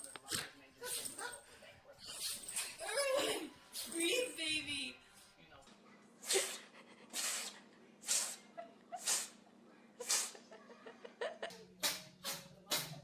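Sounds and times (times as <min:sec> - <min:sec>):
pet sneezing: 0:06.2 - 0:09.4, 0:10.0 - 0:10.4.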